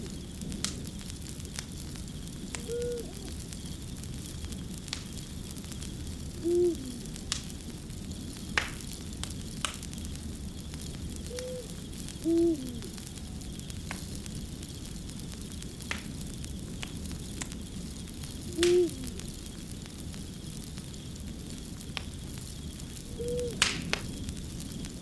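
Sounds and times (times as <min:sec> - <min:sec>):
wood fire crackling: 0:00.0 - 0:25.0
short low hoot: 0:02.6 - 0:03.3, 0:06.4 - 0:07.0, 0:11.4 - 0:13.0.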